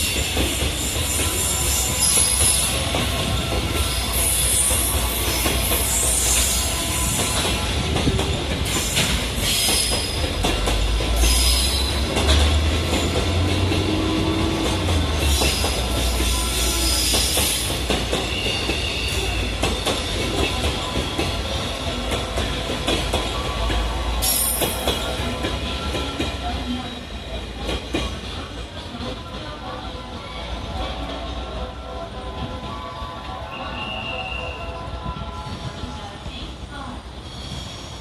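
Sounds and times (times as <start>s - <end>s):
wheels clacking over rail joints: 0.0s - 29.3s
freight train rumbling past: 0.0s - 38.0s
wheels squealing on rails: 0.0s - 38.0s.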